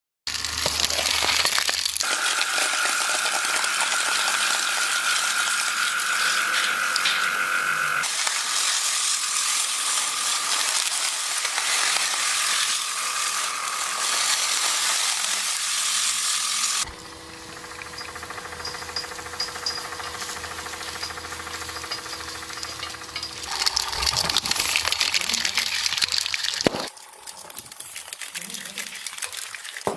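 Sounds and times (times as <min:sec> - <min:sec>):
steady hum: 0:16.8 - 0:25.2.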